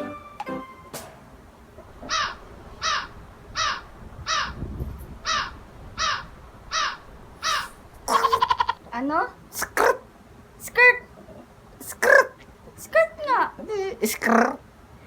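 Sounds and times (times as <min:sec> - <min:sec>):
bird harsh falling calls: 0:01.8 - 0:08.8.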